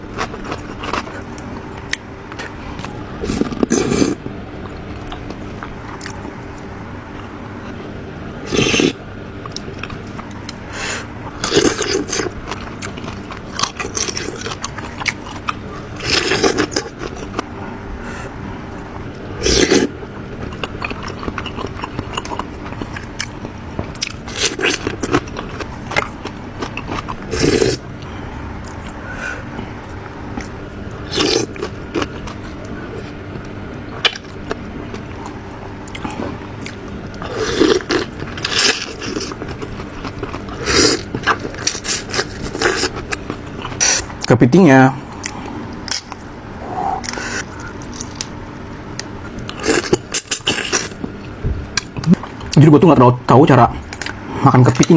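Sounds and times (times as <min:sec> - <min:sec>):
chewing and wet mouth noises: 0:08.6 - 0:17.6, 0:18.2 - 0:44.3, 0:45.1 - 0:52.6
short loud eating bursts: 0:27.2 - 0:27.8.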